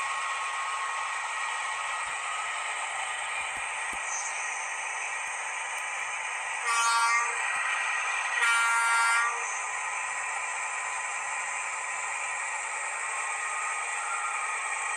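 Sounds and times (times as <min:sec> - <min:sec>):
simulated truck engine sound: 0:00.0 - 0:14.9
air horn blasts: 0:06.7 - 0:07.4, 0:08.4 - 0:09.4.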